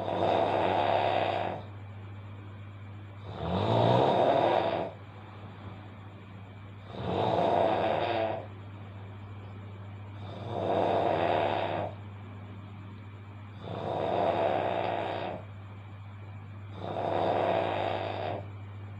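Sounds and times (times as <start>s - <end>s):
person snoring loudly: 0.0s - 1.7s, 3.2s - 5.0s, 6.8s - 8.5s, 10.2s - 12.0s, 13.5s - 15.4s, 16.7s - 18.5s
steady low hum: 0.0s - 18.9s.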